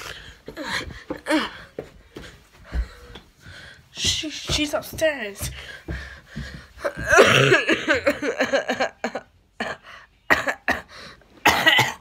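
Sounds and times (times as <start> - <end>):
boy coughing: 6.8 - 12.0.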